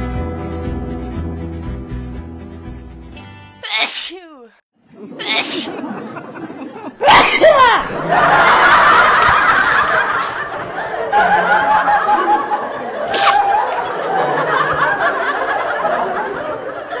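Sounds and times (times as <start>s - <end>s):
people laughing and giggling: 4.9s - 17.0s.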